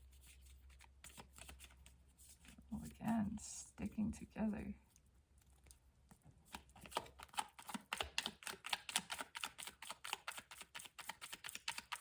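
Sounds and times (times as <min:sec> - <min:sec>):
cards being shuffled by hand: 0:00.0 - 0:03.4, 0:06.4 - 0:12.0.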